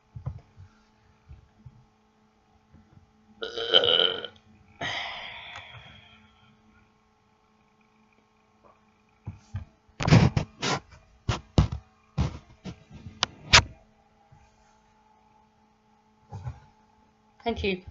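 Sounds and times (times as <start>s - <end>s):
person burping: 3.4s - 5.1s.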